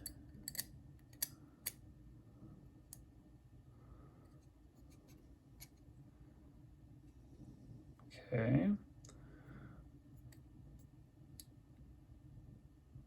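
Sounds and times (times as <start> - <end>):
metal knife parts clicking: 0.0 - 1.8
low room noise: 0.0 - 13.0.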